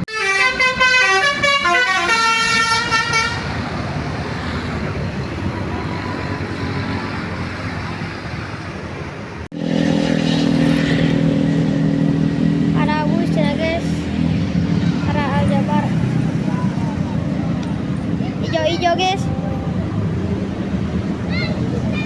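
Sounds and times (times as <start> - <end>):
bus horn playing a melody: 0.0 - 3.6
road traffic noise: 0.0 - 22.0.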